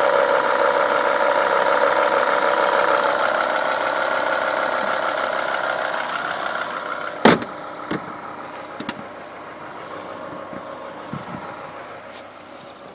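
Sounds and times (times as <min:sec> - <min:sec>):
car engine idling: 0:00.0 - 0:12.9.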